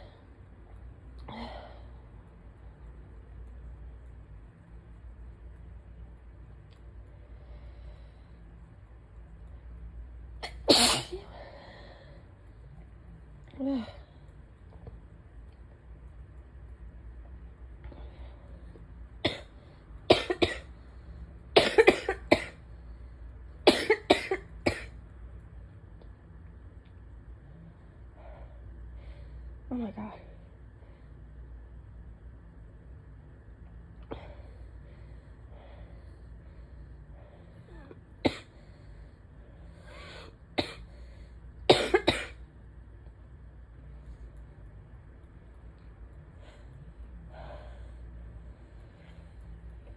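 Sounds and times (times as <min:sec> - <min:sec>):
person coughing: 0:10.4 - 0:11.3, 0:19.3 - 0:19.5, 0:20.1 - 0:20.6, 0:21.6 - 0:22.6, 0:23.7 - 0:24.9, 0:41.7 - 0:42.4.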